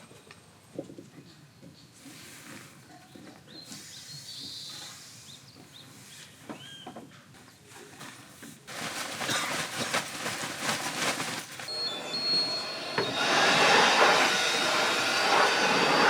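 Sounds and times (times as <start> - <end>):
high bird chirps: 11.7 - 13.2.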